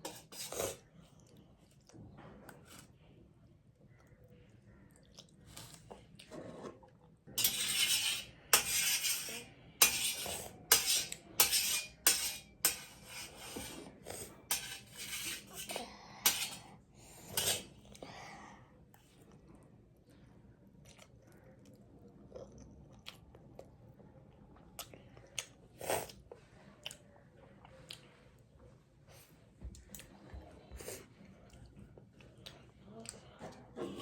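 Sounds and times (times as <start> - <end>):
utensils clinking against bowl: 7.4 - 16.7, 17.4 - 17.7.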